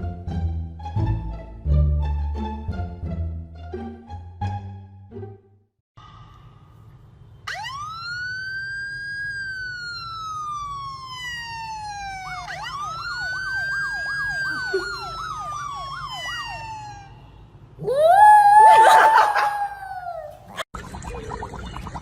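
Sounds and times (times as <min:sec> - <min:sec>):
siren wailing: 0:07.5 - 0:20.5.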